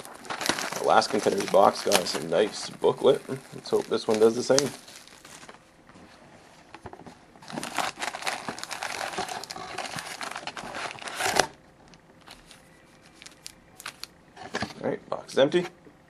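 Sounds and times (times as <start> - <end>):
plastic and foil crinkling: 0.0 - 5.6, 7.4 - 11.6, 12.2 - 14.1.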